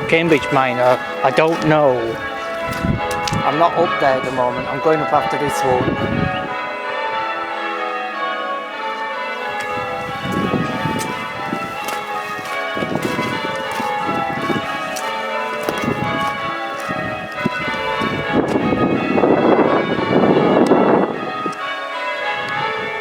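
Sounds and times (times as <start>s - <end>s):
church bells change ringing: 0.0s - 23.0s.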